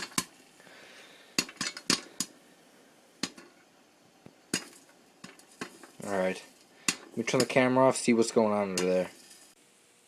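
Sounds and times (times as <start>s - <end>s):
popcorn popping in a pot: 0.0s - 9.6s.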